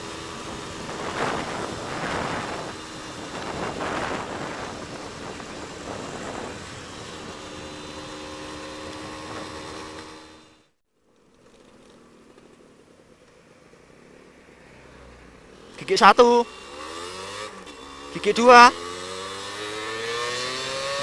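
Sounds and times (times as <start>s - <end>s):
wind rushing over microphone: 0.0s - 10.1s
motorcycle engine running: 0.0s - 10.7s, 16.4s - 21.0s.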